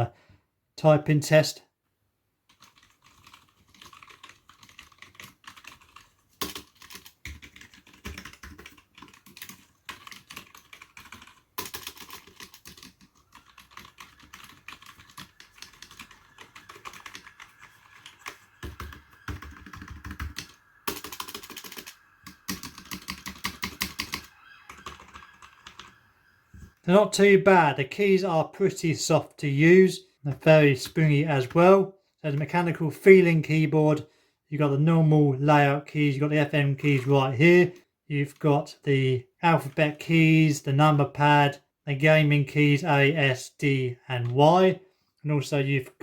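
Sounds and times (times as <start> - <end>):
keyboard typing clicks: 2.5 - 25.9.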